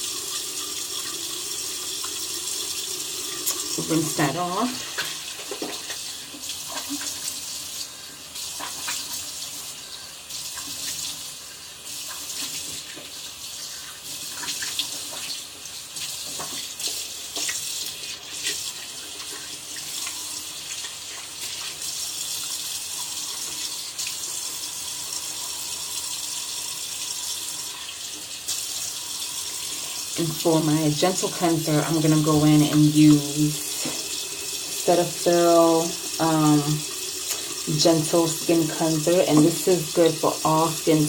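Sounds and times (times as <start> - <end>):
tap running into sink: 32.8 - 34.3.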